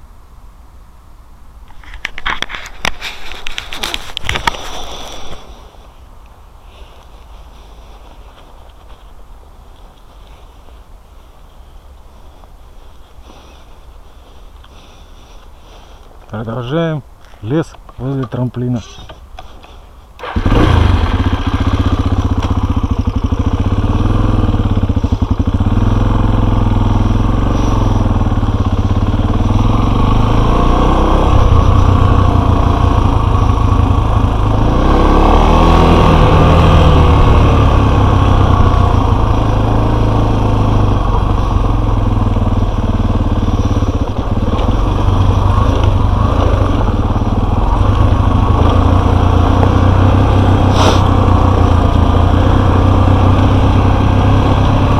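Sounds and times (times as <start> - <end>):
motorcycle engine running: 20.2 - 54.9.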